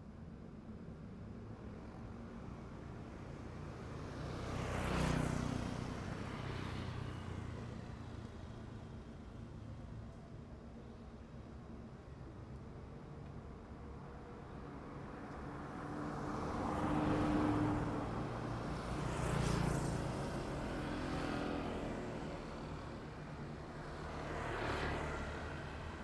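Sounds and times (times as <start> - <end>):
vehicles passing: 16.0 - 26.0.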